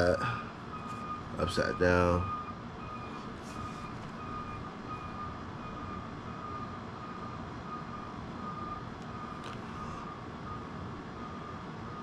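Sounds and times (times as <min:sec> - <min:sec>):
electronic beeps: 0:00.7 - 0:09.5.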